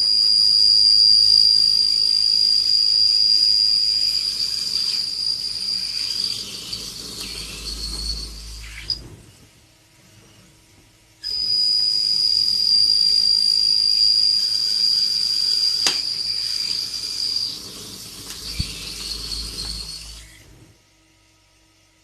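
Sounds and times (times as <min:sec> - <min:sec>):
lathe whine over hiss: 0:00.0 - 0:20.8
sharp click: 0:15.8 - 0:16.1.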